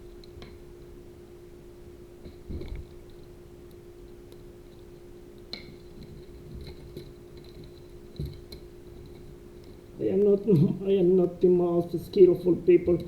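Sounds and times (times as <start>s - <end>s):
steady low hum: 0.0s - 13.0s
faint clicks and light knocks: 5.4s - 11.4s.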